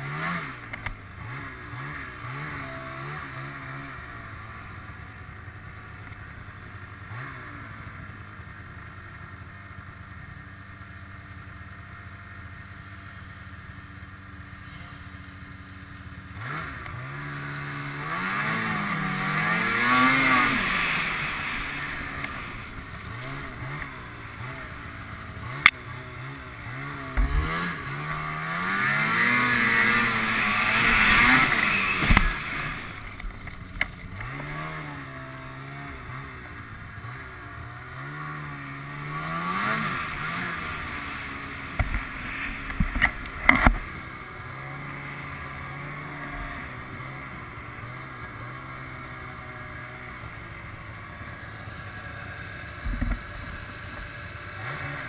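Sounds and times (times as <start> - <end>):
snowmobile engine revving: 0.0 - 10.1, 12.5 - 55.0.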